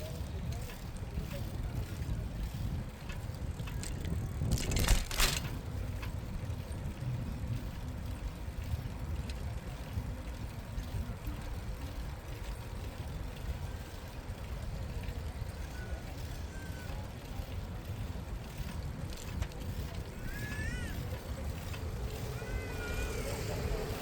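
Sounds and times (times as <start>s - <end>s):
bicycle rattling clatter: 0.0s - 24.0s
bicycle tyres rolling: 0.0s - 24.0s
wind on microphone: 0.2s - 7.8s.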